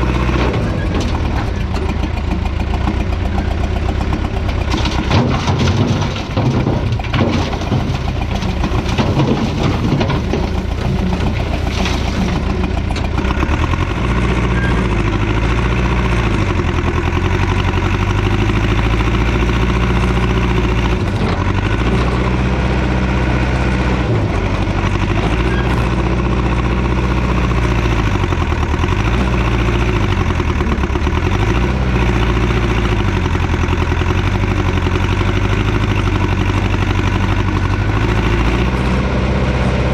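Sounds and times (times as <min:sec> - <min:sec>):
loader engine running: 0:00.0 - 0:39.9
debris clattering: 0:04.3 - 0:14.6.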